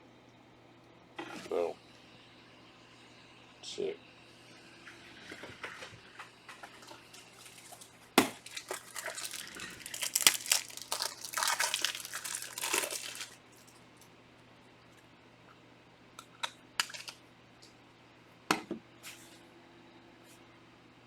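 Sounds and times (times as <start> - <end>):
wrappers tearing and crinkling: 6.9 - 13.8.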